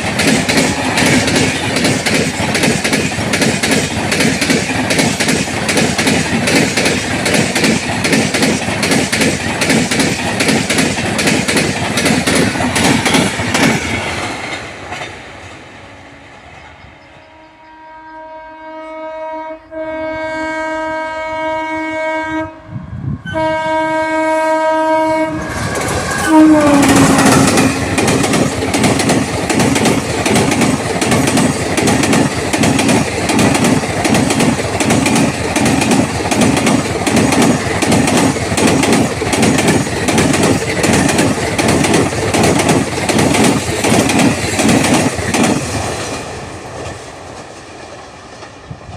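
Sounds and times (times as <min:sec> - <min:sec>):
coaches clattering over rails: 0:00.0 - 0:17.2, 0:25.3 - 0:48.9
train wheels rattling on track: 0:00.0 - 0:17.7, 0:23.4 - 0:48.9
locomotive horn blast: 0:17.3 - 0:27.9.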